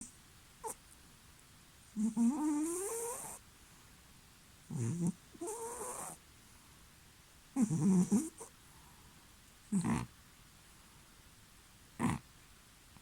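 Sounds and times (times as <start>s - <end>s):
cat snoring: 2.0s - 3.4s, 4.7s - 6.2s, 7.6s - 8.5s, 9.7s - 10.1s, 12.0s - 12.2s.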